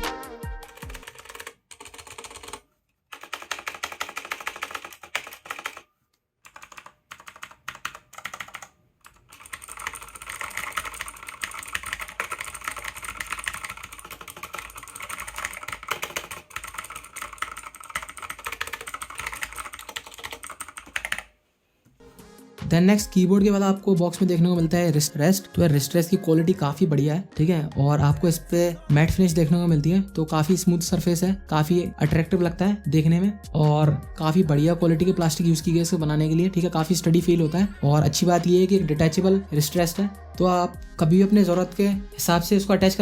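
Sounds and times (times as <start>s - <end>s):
mechanical keyboard typing: 0.7s - 21.3s.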